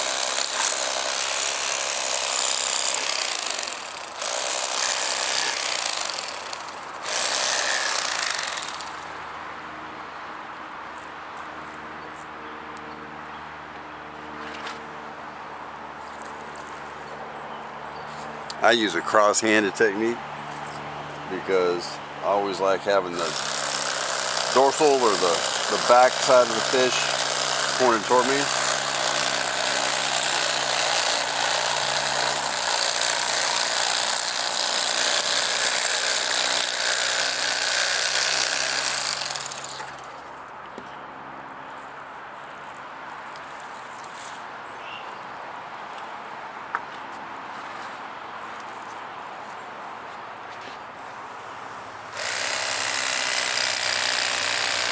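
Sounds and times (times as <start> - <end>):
electric fillet knife running: 0.0 - 8.9, 23.2 - 39.9, 52.2 - 54.9.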